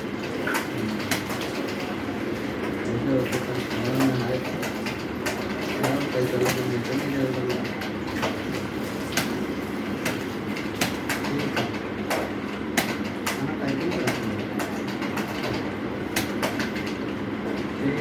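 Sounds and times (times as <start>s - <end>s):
keyboard keys clicking: 10.0s - 17.7s.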